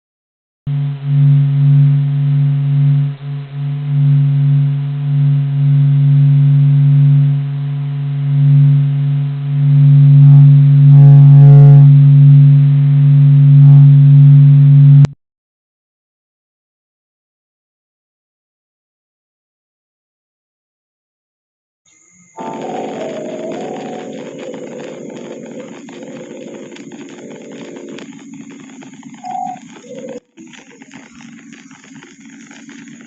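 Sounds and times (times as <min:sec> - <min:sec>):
low electronic drone: 0:00.7 - 0:15.1, 0:22.4 - 0:33.0.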